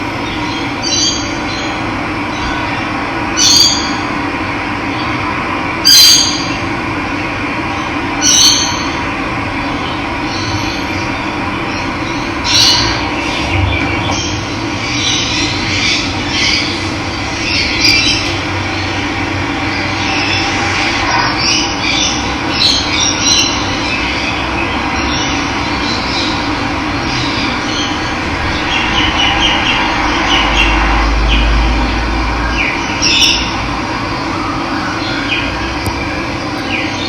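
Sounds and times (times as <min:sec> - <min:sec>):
birds chirping: 0:00.0 - 0:04.0, 0:09.6 - 0:37.0
low rumble: 0:12.9 - 0:16.2, 0:26.5 - 0:34.2.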